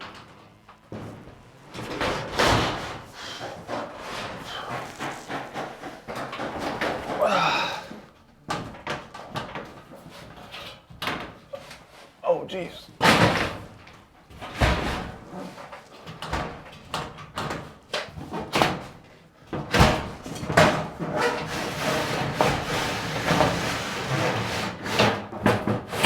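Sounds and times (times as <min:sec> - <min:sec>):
steel panel banging and rattling: 0:00.9 - 0:07.4.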